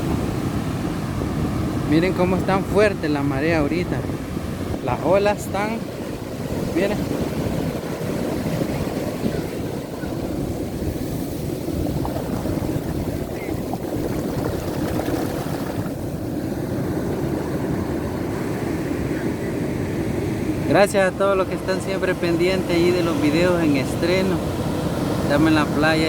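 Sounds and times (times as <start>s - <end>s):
surf washing onto beach: 0.0s - 19.0s
wind buffeting microphone: 0.0s - 19.2s.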